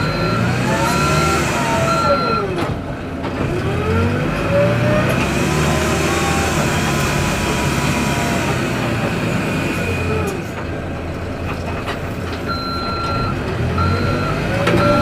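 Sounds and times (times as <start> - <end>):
reversing alarm beeps: 0.0 - 2.5, 12.5 - 15.0
diesel engine running: 0.0 - 15.0.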